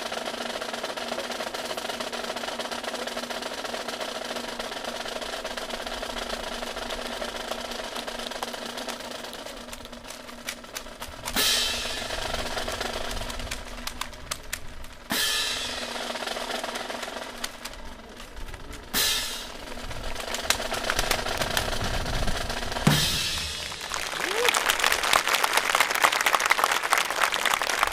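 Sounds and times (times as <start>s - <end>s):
rifles clicking and clapping: 7.9s - 15.0s, 16.4s - 18.9s, 20.0s - 21.8s, 23.4s - 27.9s.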